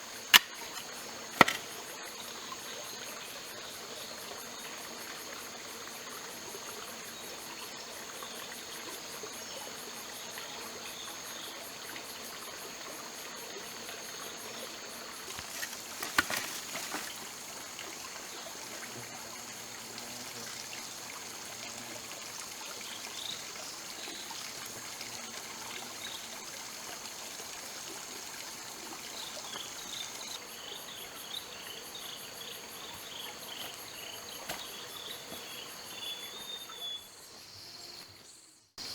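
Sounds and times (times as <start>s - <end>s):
insects calling: 0.0s - 38.9s
sharp knocks: 1.4s - 1.6s.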